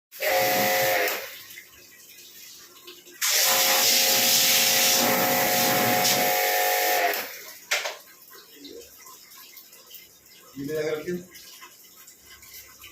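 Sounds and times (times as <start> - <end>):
pressure washer water spray: 0.2 - 1.3, 3.2 - 7.4
pump motor whine: 0.2 - 1.4, 3.2 - 7.4.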